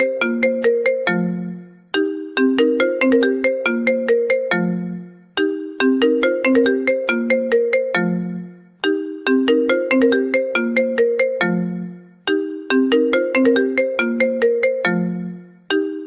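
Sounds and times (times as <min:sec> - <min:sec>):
phone ringtone melody: 0:00.0 - 0:16.0.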